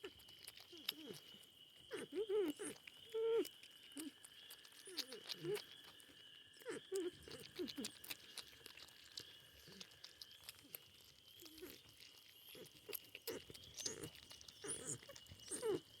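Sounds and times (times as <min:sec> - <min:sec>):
porcupines chewing: 0:00.0 - 0:16.0
whiny animal calls: 0:00.7 - 0:04.2, 0:04.8 - 0:05.7, 0:06.6 - 0:08.2, 0:11.4 - 0:16.0.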